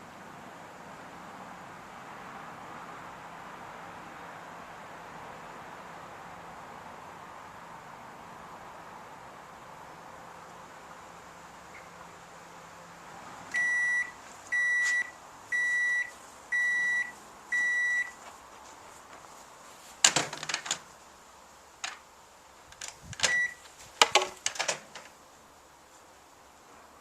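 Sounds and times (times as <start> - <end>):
microwave oven beeping: 13.6 - 18.1, 23.2 - 23.6
sharp clicks: 21.8 - 22.0, 22.7 - 23.4, 24.0 - 25.2.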